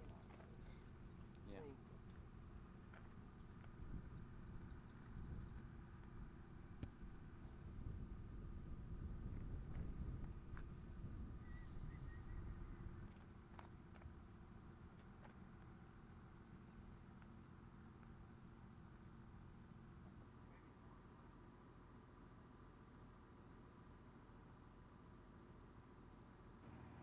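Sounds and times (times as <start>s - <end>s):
faint low rumble: 0.0s - 21.0s
insects trilling: 0.0s - 26.9s.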